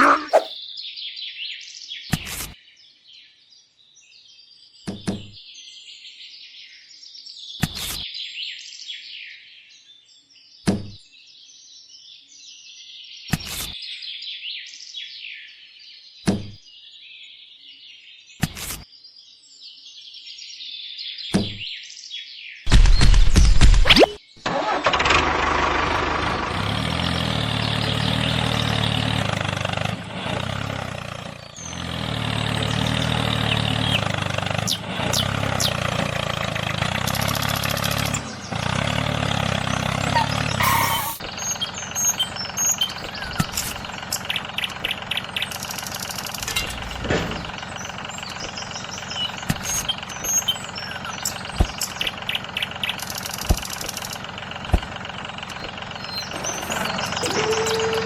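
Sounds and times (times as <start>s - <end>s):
model tractor engine running: 24.5s - 58.0s.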